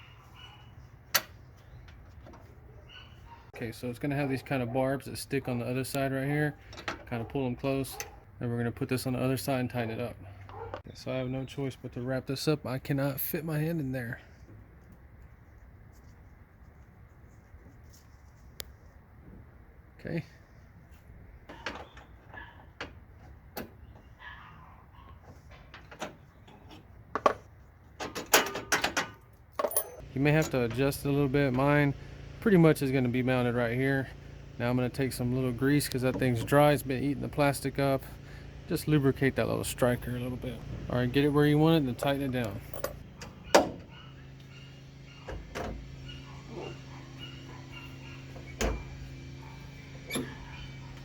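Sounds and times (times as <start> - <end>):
lock hardware clicking and knocking: 42.0 - 43.9.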